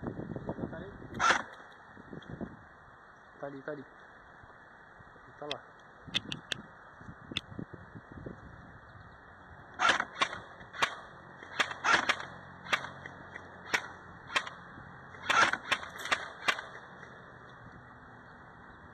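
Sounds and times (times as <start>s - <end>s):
airsoft gun shots: 1.2s - 1.6s, 9.8s - 14.6s, 15.2s - 17.0s.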